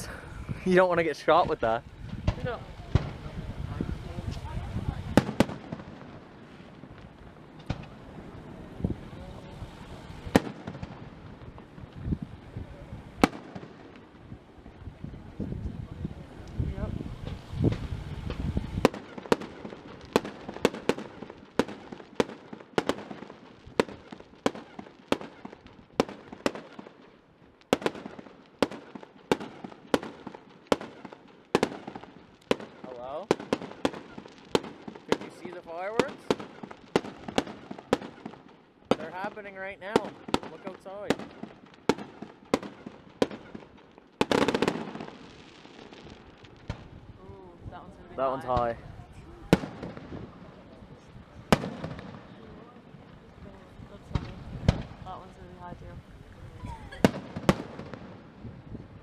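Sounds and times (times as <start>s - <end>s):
rumbling echo: 0.0s - 21.0s
fireworks bursting overhead: 0.0s - 59.0s.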